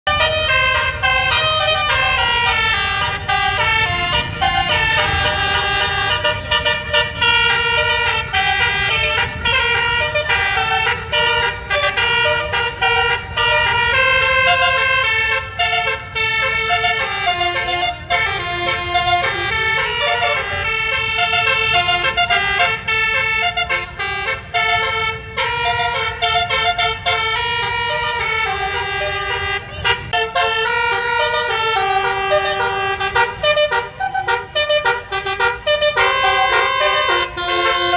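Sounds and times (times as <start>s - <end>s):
musical horns playing a melody: 0.1s - 37.9s.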